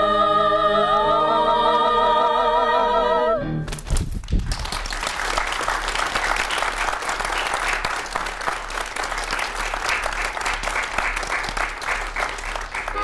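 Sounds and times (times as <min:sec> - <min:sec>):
song: 0:00.0 - 0:03.8
audience applauding: 0:04.4 - 0:13.0.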